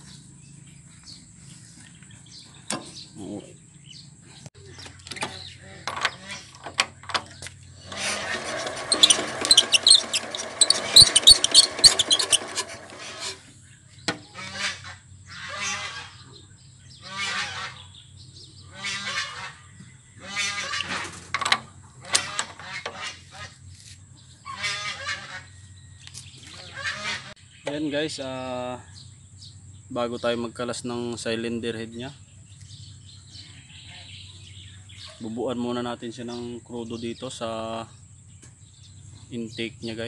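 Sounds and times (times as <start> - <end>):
fowl honking: 14.3 - 16.3, 17.0 - 17.9, 18.7 - 21.1, 24.4 - 25.6, 26.6 - 27.4.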